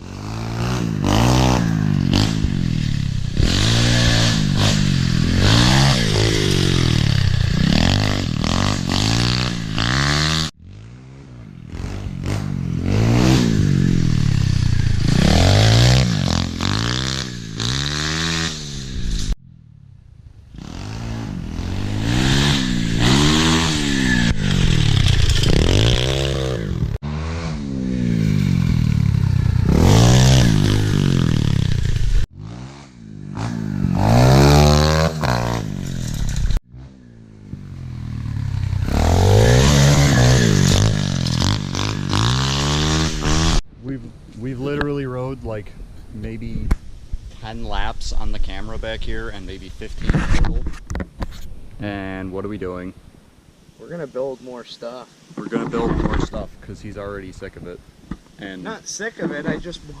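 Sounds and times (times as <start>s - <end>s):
motorbike engine revving: 0.0s - 43.6s.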